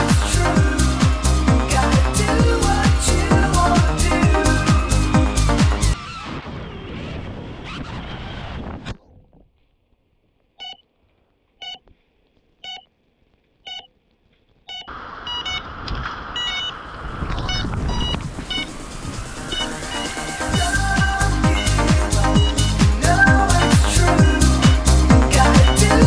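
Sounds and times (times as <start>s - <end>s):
short two-tone electronic beeps: 10.6s - 10.8s, 12.6s - 12.8s, 14.7s - 15.6s, 16.4s - 16.8s, 17.4s - 18.7s, 19.5s - 20.8s, 21.4s - 22.8s, 24.2s - 26.0s
rushing noise: 15.0s - 26.0s.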